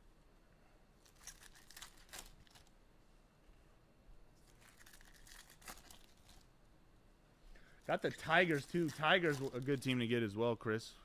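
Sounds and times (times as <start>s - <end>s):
packaging rustling and crinkling: 1.0s - 2.7s, 4.4s - 6.5s, 7.9s - 10.0s.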